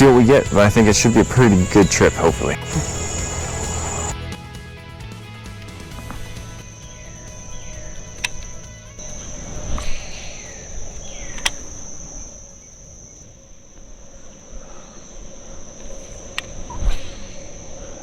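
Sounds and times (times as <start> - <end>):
insects droning: 0.0 - 4.2, 6.2 - 18.0
sharp clicks: 0.2 - 4.1.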